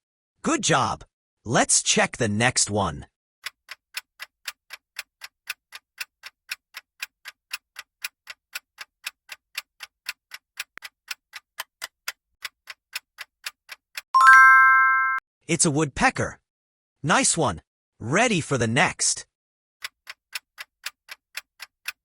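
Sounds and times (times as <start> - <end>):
clock-like ticking: 3.4 - 14.1, 19.8 - 22.0
loud bright chime: 14.2 - 15.2.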